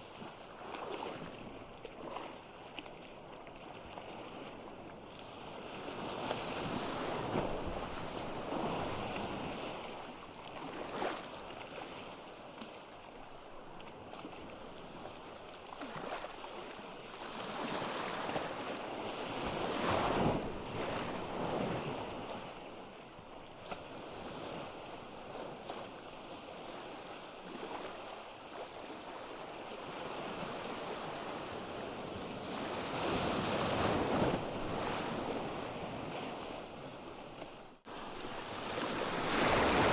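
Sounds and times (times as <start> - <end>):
wind: 0.0 - 39.9
ocean waves washing onto beach: 33.6 - 39.9.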